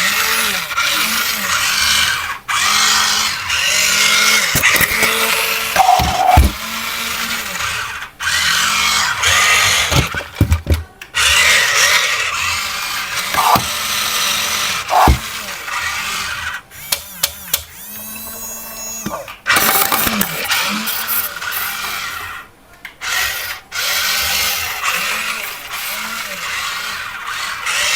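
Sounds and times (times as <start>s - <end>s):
electric gear motors whirring: 0.0s - 27.9s
plastic clicks: 4.0s - 6.6s, 9.2s - 12.0s, 13.2s - 13.8s, 19.0s - 22.0s.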